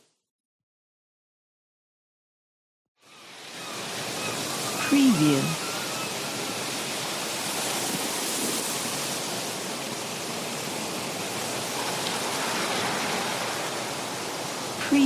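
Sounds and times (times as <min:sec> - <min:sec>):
sea waves washing on shore: 0:03.2 - 0:15.0.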